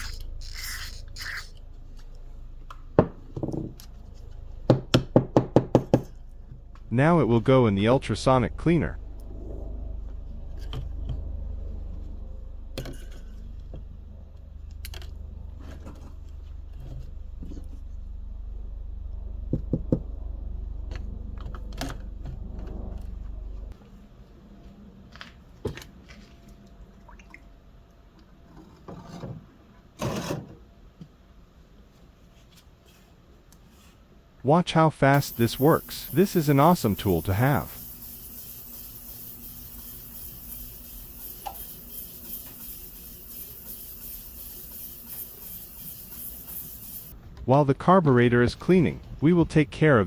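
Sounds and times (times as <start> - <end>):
steady low hum: 6.6 - 12.8, 35.1 - 47.2
metal parts clicking and knocking: 35.2 - 47.2.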